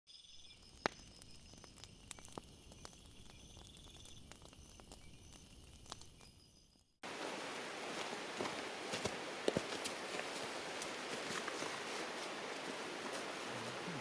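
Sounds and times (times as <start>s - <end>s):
small clicks and crackles: 0.5s - 6.4s.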